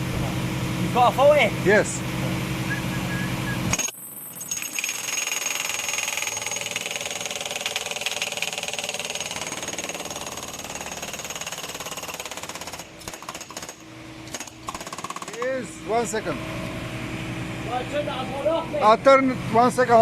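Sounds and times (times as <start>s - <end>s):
engine drone: 0.0s - 4.0s
jackhammer hammering: 3.7s - 15.7s.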